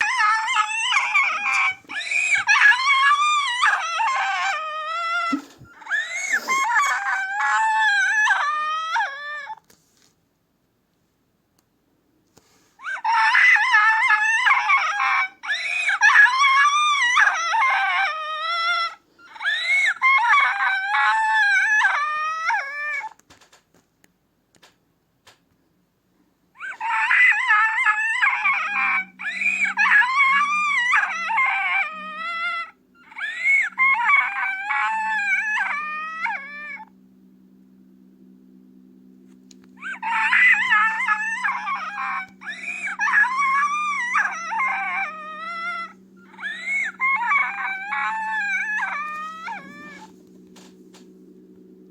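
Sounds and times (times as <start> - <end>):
cartoon crying sound effect: 0.0 - 9.6, 12.8 - 23.1, 26.6 - 36.9, 39.8 - 50.1
low steady hum: 24.0 - 51.9.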